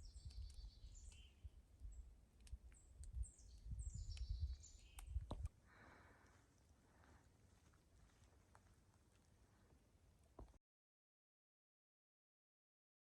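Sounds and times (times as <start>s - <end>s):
songbird singing: 0.0s - 5.5s
sharp clicks: 2.4s - 3.2s.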